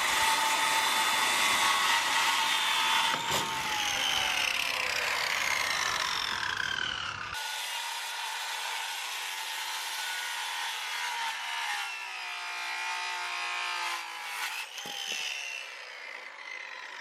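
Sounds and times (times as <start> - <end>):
power saw cutting wood: 0.0 - 17.0.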